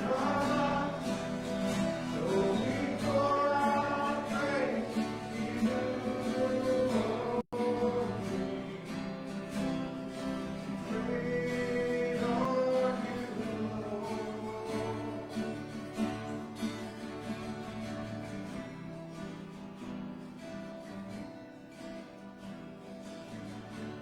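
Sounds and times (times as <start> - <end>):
group singing worship song: 0.0 - 15.8
strummed acoustic guitar: 0.0 - 24.0.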